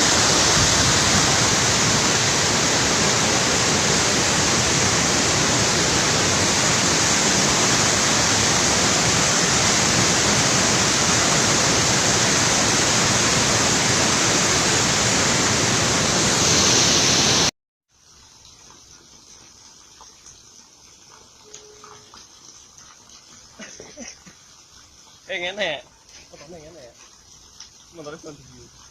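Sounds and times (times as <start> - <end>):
waterfall rushing: 0.0 - 17.5.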